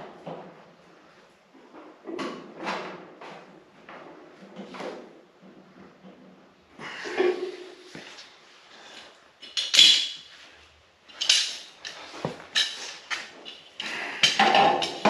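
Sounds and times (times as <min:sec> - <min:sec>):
metal tools clattering and scraping: 0:08.8 - 0:10.4, 0:11.1 - 0:15.0.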